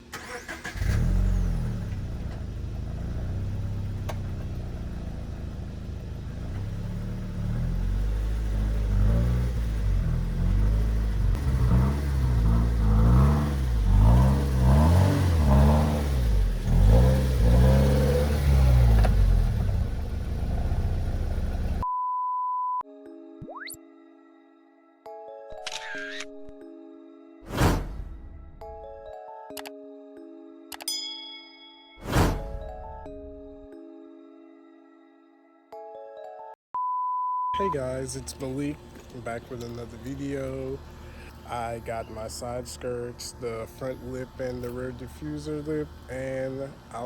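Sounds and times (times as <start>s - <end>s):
car engine revving: 0.1s - 21.8s, 37.6s - 47.0s
steady high beep tone: 36.8s - 37.8s.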